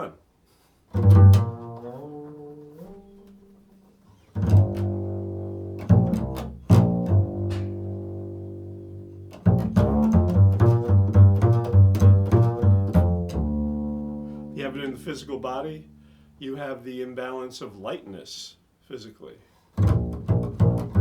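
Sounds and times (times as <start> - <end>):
double bass played pizzicato: 0.9 - 16.4, 19.8 - 21.0.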